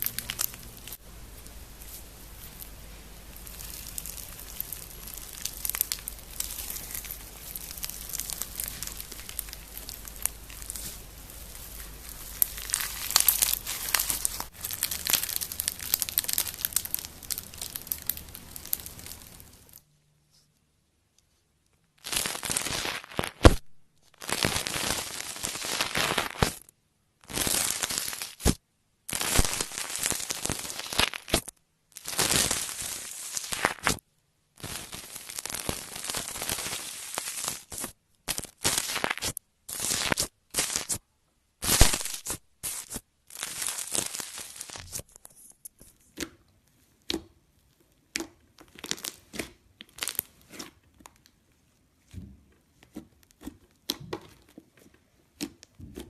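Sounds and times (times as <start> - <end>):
slime crackling when squeezed: 0.0 - 19.8, 22.0 - 23.6, 27.3 - 34.0, 34.6 - 41.0, 41.6 - 45.1, 48.1 - 51.2.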